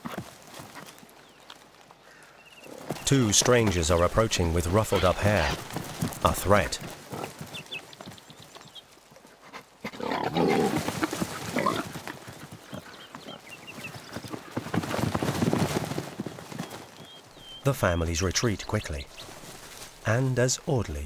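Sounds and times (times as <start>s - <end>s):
wild boars grunting: 2.6s - 8.4s, 9.4s - 14.7s.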